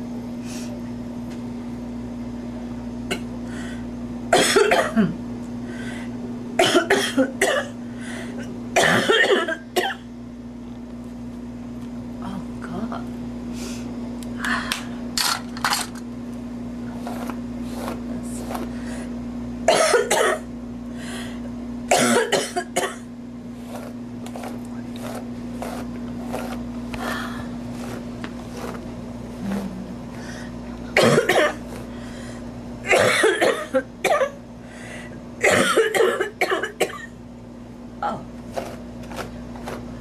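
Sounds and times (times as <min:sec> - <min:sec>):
steady low hum: 0:00.0 - 0:40.0
woman coughing: 0:04.3 - 0:05.2, 0:06.6 - 0:07.8, 0:08.8 - 0:10.0, 0:19.7 - 0:20.5, 0:21.9 - 0:23.1, 0:30.9 - 0:31.6, 0:32.8 - 0:34.4, 0:35.4 - 0:37.2.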